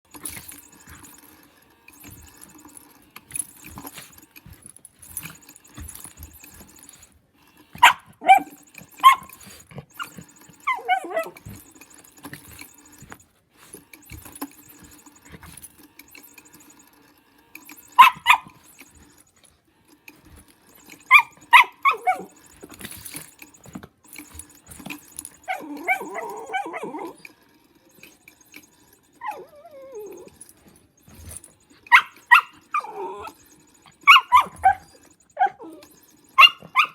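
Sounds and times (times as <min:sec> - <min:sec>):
puppy yipping: 0:07.8 - 0:09.4, 0:10.0 - 0:11.4, 0:18.0 - 0:18.6, 0:21.1 - 0:22.4, 0:25.4 - 0:27.2, 0:29.2 - 0:30.4, 0:31.9 - 0:33.4, 0:34.0 - 0:36.9
puppy whining: 0:07.8 - 0:15.7, 0:17.6 - 0:19.2, 0:20.2 - 0:36.9.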